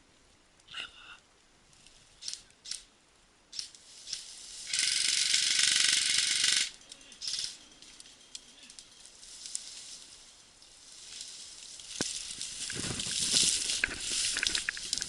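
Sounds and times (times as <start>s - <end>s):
airsoft gun firing full-auto: 4.7s - 6.8s.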